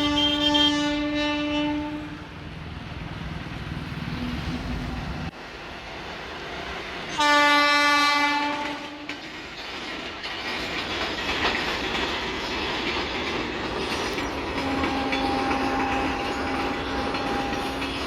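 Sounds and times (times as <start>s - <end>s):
locomotive horn: 0.0s - 2.4s, 7.1s - 9.2s, 14.6s - 17.9s
train rumble and wheel clatter: 0.0s - 18.0s.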